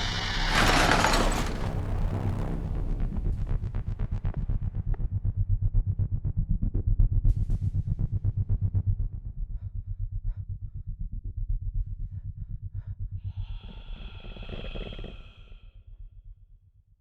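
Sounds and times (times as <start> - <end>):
rasping monster exhale: 13.2 - 15.8.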